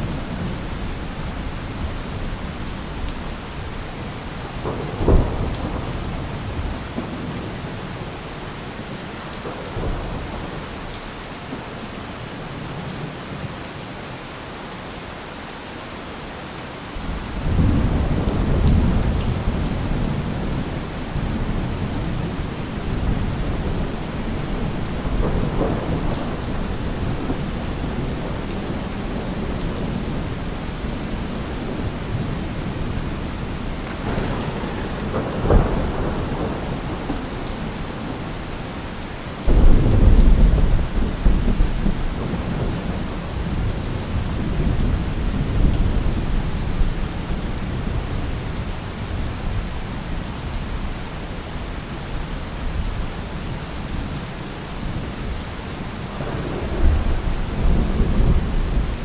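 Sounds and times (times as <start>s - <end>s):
steady rain falling: 0.0s - 59.0s
low rolling thunder rumble: 3.7s - 8.1s, 17.0s - 38.6s, 39.4s - 49.6s, 56.2s - 59.0s
sharp thunderclap: 4.6s - 7.2s, 39.5s - 42.8s.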